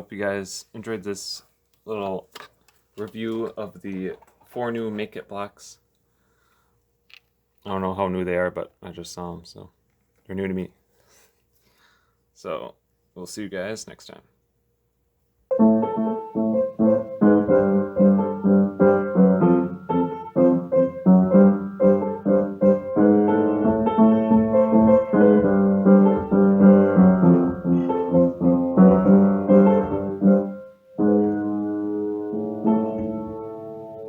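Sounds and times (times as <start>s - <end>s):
piano music: 15.5s - 34.0s.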